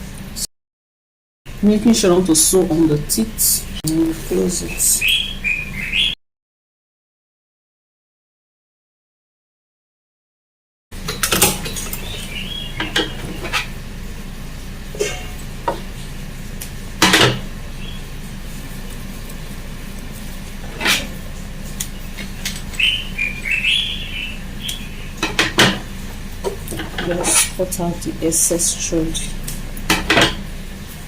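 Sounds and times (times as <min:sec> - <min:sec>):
steady low hum: 0:11.0 - 0:31.0.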